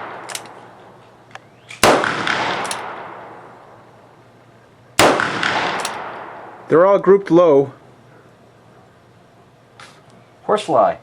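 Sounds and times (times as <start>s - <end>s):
revolver shots echoing: 1.7s - 3.8s, 5.0s - 6.7s.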